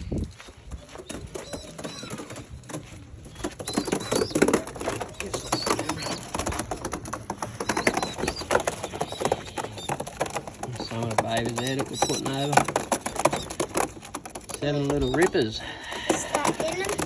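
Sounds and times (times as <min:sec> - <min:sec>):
pigeons chirping: 0:00.0 - 0:17.0
pigeons clattering and scuffling: 0:00.0 - 0:17.0.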